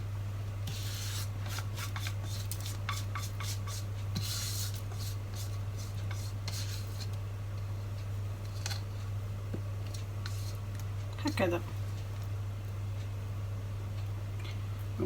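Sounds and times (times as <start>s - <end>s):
spoon scraping a baking dish: 0.7s - 7.2s, 9.9s - 10.6s.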